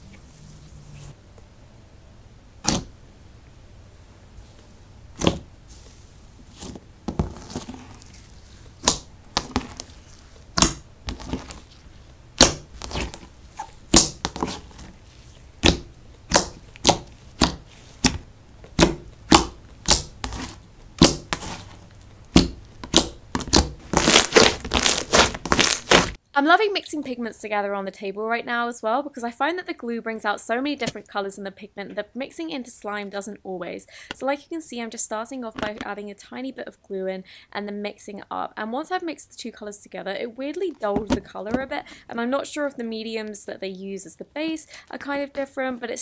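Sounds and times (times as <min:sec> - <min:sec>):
slime squished by hand popping: 0:08.8 - 0:09.9, 0:10.5 - 0:11.6, 0:12.4 - 0:13.3, 0:13.9 - 0:14.8, 0:15.6 - 0:21.7, 0:22.3 - 0:26.2.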